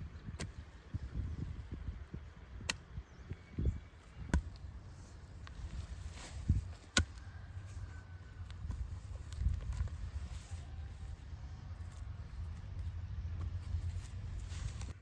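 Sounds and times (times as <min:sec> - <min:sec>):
low rumble: 0:03.3 - 0:15.0.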